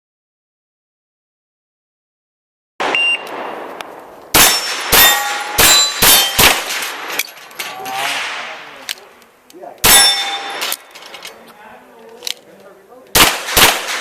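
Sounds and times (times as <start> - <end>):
pistol shots: 2.8 - 7.3, 9.8 - 10.8, 13.1 - 14.0
steel plate ringing clang: 4.4 - 6.6, 9.8 - 11.0.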